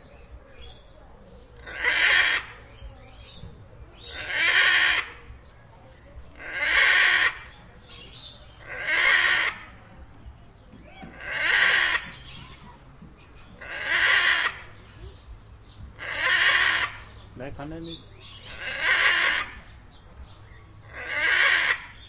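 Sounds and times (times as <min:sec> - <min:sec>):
macaw squawking: 0:01.6 - 0:02.6, 0:04.0 - 0:05.2, 0:06.4 - 0:09.7, 0:11.0 - 0:12.7, 0:13.3 - 0:14.8, 0:16.0 - 0:17.2, 0:17.9 - 0:19.7, 0:20.8 - 0:22.0.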